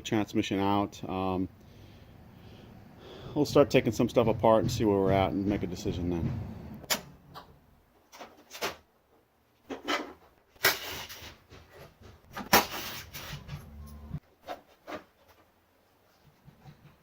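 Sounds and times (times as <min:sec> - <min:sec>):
scraping rattles: 0:02.8 - 0:08.7, 0:09.7 - 0:15.2.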